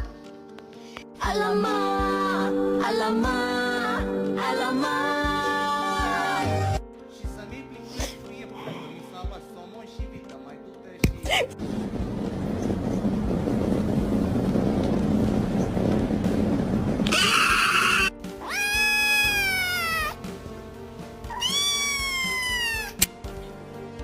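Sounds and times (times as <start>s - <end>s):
background music: 0.0s - 24.0s
loud noisy rumble: 11.6s - 18.1s
cat meowing: 17.1s - 20.2s, 21.3s - 23.0s.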